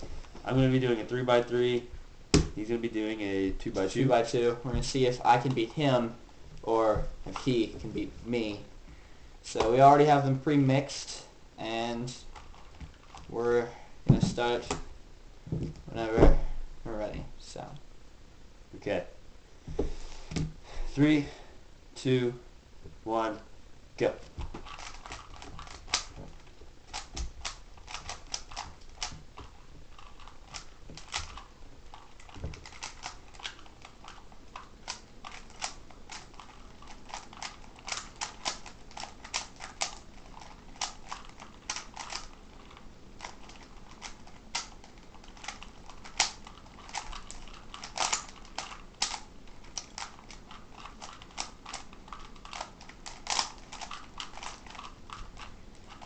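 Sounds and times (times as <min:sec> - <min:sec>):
puzzle cubes clicking: 0:26.9 - 0:56.0.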